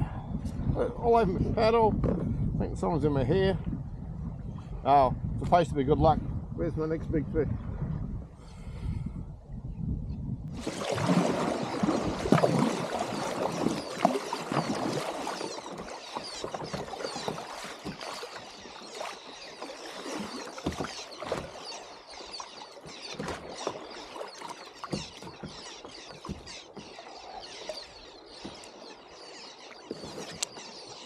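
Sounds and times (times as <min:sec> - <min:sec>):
water splashing around kayak: 0:10.5 - 0:31.0.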